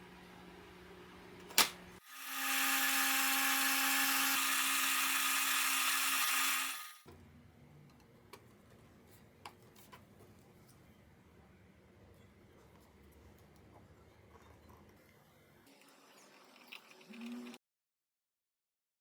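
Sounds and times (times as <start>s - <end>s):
electric power tool running: 2.0s - 7.0s.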